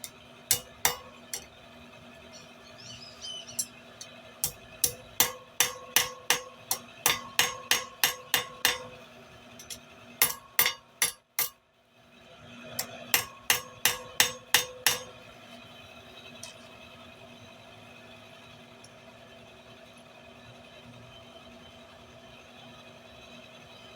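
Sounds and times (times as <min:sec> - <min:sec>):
anvil ringing: 0:00.0 - 0:01.5, 0:04.4 - 0:09.0, 0:09.6 - 0:11.6, 0:12.8 - 0:15.2
hammer striking steel on anvil: 0:00.0 - 0:01.5, 0:03.6 - 0:11.6, 0:12.8 - 0:15.2.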